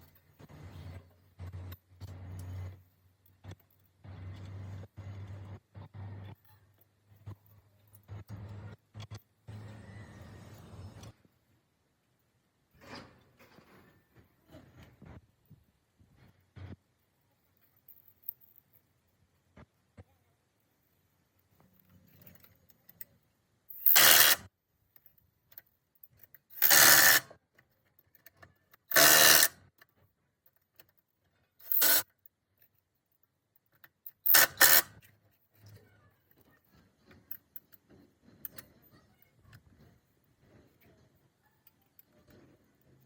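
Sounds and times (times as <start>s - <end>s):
workshop tool bursts: 23.8s - 24.5s, 26.6s - 27.3s, 28.9s - 29.6s, 31.7s - 32.0s, 34.2s - 34.9s.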